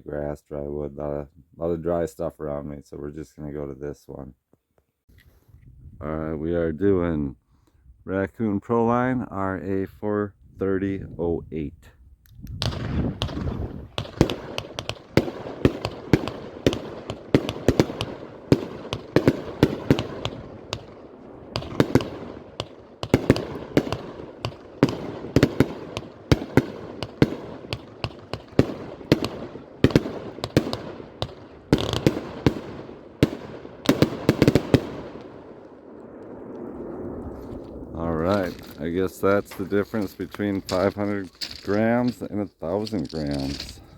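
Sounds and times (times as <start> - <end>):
firework cake bangs: 12.6 - 35.4.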